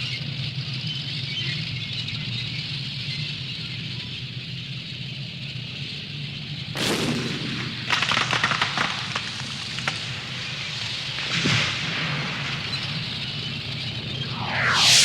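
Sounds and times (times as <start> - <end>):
low hum: 14.2 - 15.0.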